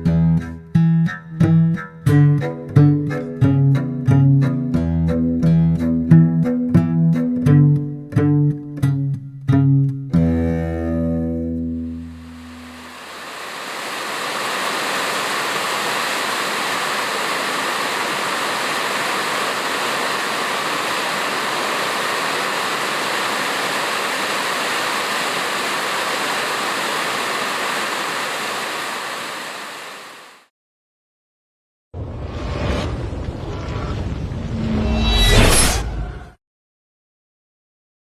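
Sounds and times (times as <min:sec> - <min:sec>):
heavy rain pouring: 0:12.3 - 0:30.3.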